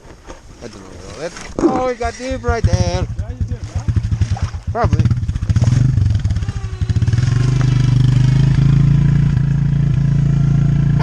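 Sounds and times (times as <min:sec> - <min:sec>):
atv engine running hard: 0:02.3 - 0:11.0.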